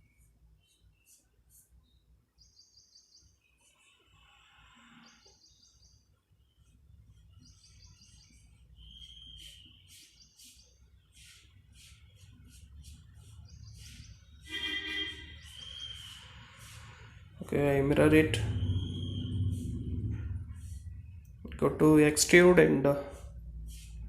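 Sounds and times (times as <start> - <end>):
birds chirping and trilling: 0.0 - 21.6
low steady hum: 17.3 - 22.6
whistled note: 18.3 - 20.1.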